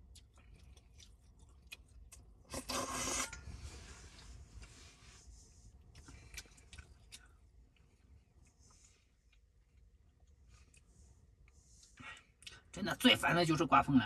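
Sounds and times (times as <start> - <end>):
loud scraping rustle: 2.5 - 4.2.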